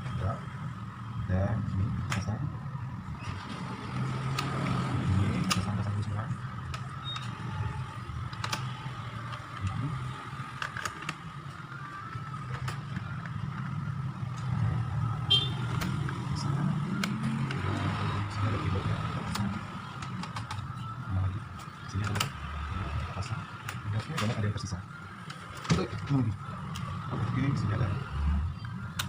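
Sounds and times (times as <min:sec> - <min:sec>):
plastic parts clicking and tapping: 0:04.3 - 0:05.9, 0:06.6 - 0:07.4, 0:08.1 - 0:09.8, 0:10.4 - 0:14.6, 0:15.7 - 0:16.3, 0:19.2 - 0:20.8, 0:21.5 - 0:22.4.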